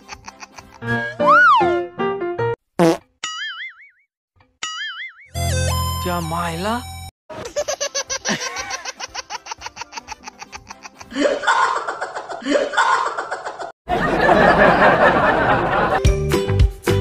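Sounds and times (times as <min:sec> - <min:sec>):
laughter in bursts: 0:00.0 - 0:00.9, 0:07.4 - 0:16.0
background music: 0:00.1 - 0:02.6, 0:15.5 - 0:17.0.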